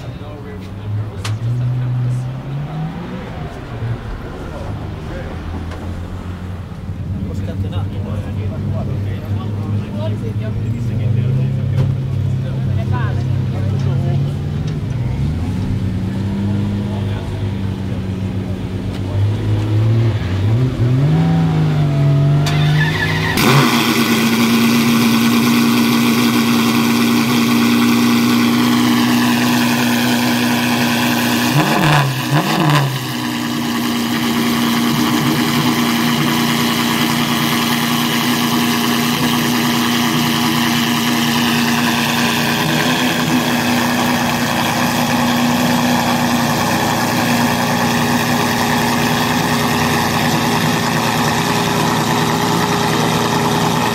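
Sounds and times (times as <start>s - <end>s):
race car engine idling: 0.0s - 19.7s, 21.4s - 53.9s.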